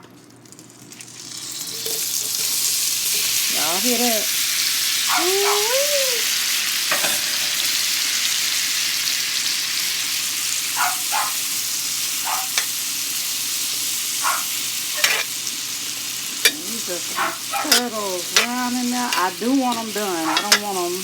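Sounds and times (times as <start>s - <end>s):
zucchini sizzling in a skillet: 0.0s - 21.0s
utensil scraping a pan: 15.0s - 15.3s, 16.4s - 20.8s.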